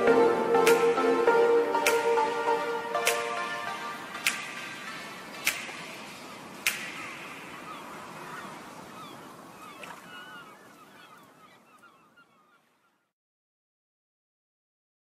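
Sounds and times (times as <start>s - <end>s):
steady hiss: 0.0s - 9.6s
birds chirping: 3.2s - 13.1s
sharp clicks: 6.6s - 7.2s.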